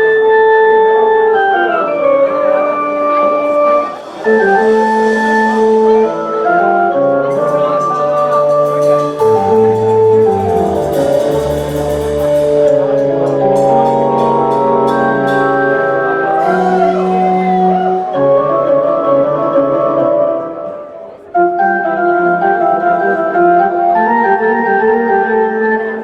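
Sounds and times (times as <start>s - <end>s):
electronic organ chords: 0.0s - 26.0s
low bass notes: 1.4s - 20.8s
cymbals: 1.5s - 21.3s.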